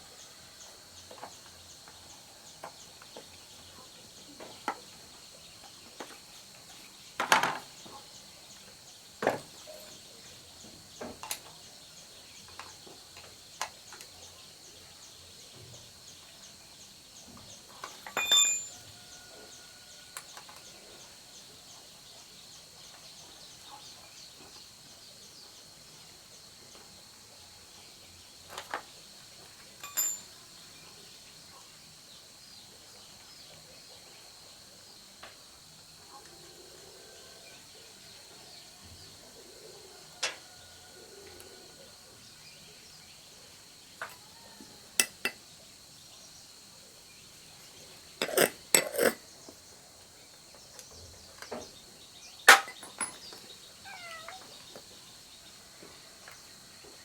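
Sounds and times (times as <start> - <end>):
metallic clinks and taps: 17.8 - 18.8, 29.8 - 30.4, 45.0 - 45.4, 52.5 - 53.4.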